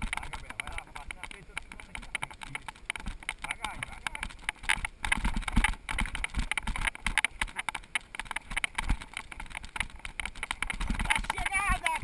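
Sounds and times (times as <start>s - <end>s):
mountain bike rattling: 0.0s - 12.0s.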